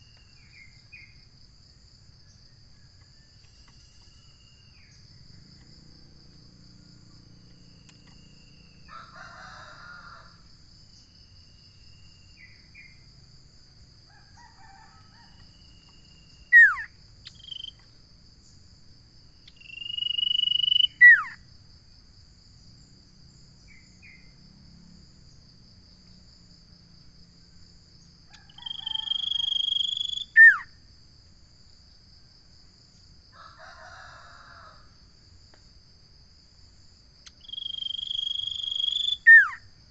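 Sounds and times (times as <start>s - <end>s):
high insect trill: 0.0s - 39.9s
bird whistling: 16.5s - 17.7s, 19.7s - 21.4s, 37.6s - 39.6s.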